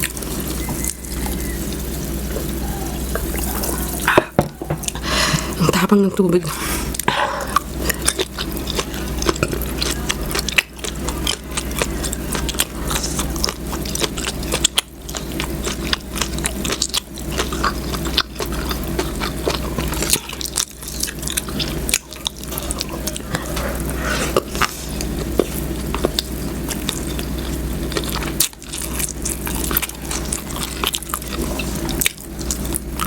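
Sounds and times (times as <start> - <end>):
chewing and biting food: 6.7 - 33.0.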